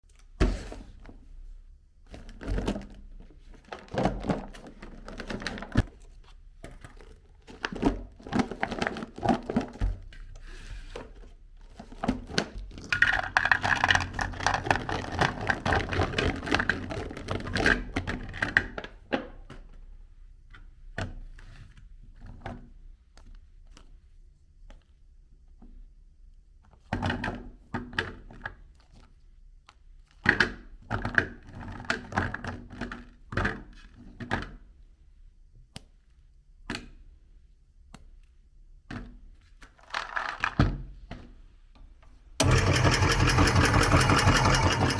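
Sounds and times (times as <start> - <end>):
meat grinder crunching cookies: 42.4 - 44.9.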